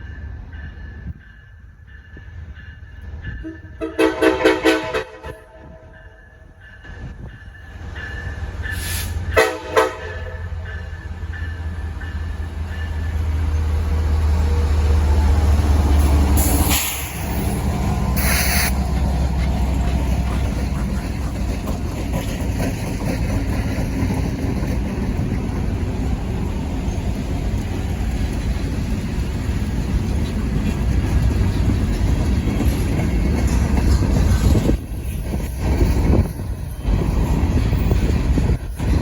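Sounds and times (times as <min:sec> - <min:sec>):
diesel locomotive rumble: 0:00.0 - 0:39.0
train cars rolling by: 0:00.0 - 0:39.0
train horn blasts: 0:03.4 - 0:05.9, 0:08.8 - 0:10.5.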